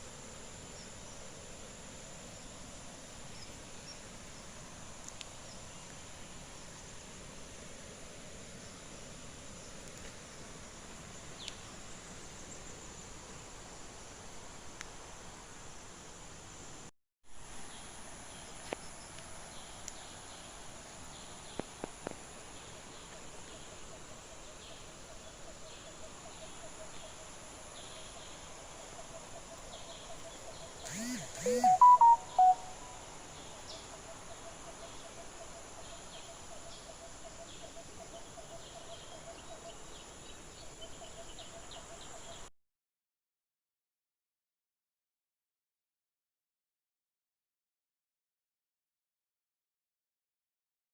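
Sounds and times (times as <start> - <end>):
insects buzzing: 30.8 - 33.9.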